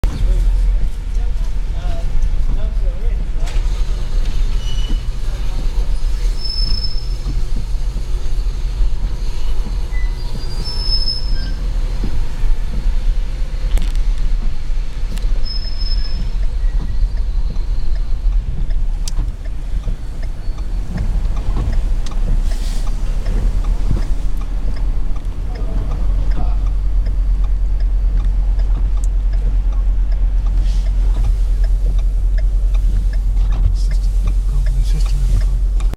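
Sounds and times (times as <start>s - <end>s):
car driving through snow: 0.0s - 35.9s
light regular ticking: 0.8s - 35.9s
short high squeals: 3.7s - 5.2s, 5.9s - 7.3s, 9.8s - 11.7s, 15.4s - 18.2s
sharp clicks: 13.6s - 35.9s.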